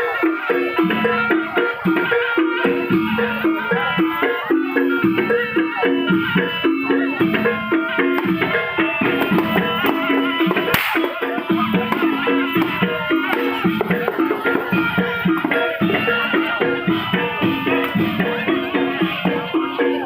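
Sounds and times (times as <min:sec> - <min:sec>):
clacking percussion: 0:00.0 - 0:20.0
drums: 0:00.0 - 0:20.0
pitched metal notes: 0:06.3 - 0:20.0.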